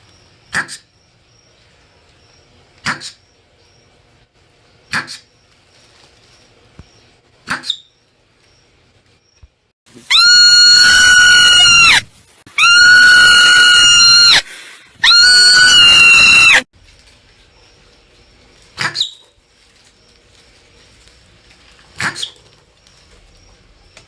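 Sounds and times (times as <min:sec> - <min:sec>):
marmot screaming calls: 0:10.1 - 0:12.0, 0:12.6 - 0:16.6.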